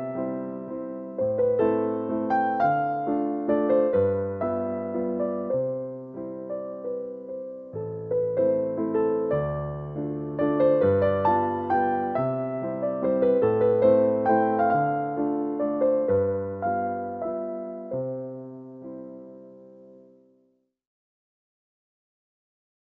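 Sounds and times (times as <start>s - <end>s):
electric piano melody: 0.0s - 20.3s.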